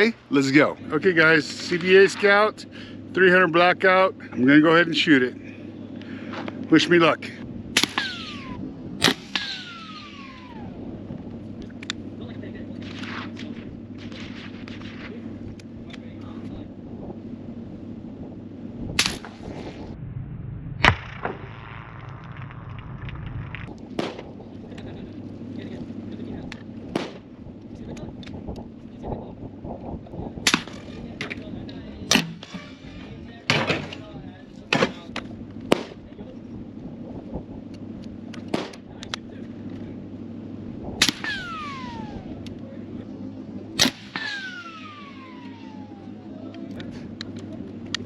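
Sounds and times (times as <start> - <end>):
suppressed gunshot crack: 7.7 - 10.4, 12.8 - 15.2, 19.0 - 19.9, 23.9 - 24.3, 26.9 - 27.3, 30.4 - 31.0, 32.1 - 32.8, 35.7 - 36.0, 38.4 - 38.8, 41.0 - 42.2, 43.8 - 45.2
bullet hitting target: 7.8 - 10.0, 19.0 - 19.9, 24.0 - 24.3, 26.9 - 27.2, 30.4 - 31.4, 32.1 - 34.0, 38.4 - 38.8, 41.0 - 42.2, 43.8 - 44.6.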